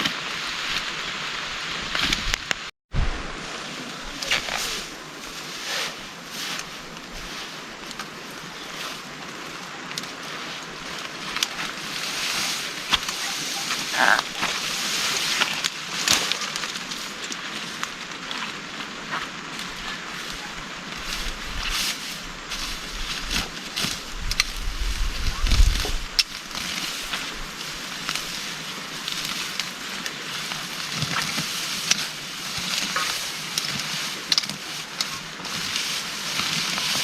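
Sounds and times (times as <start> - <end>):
heavy rain pouring: 0.1 - 21.6
strong wind: 1.8 - 5.2, 19.7 - 27.8.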